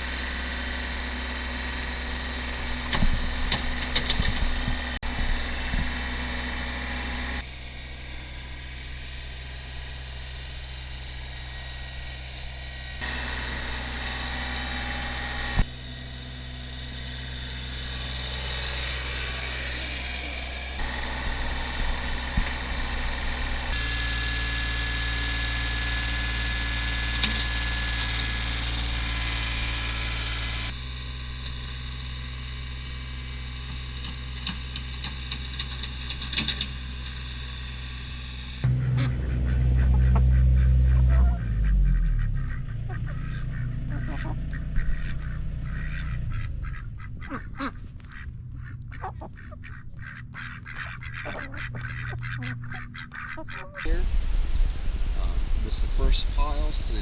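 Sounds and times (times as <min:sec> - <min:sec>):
engine humming: 0:00.0 - 0:57.0.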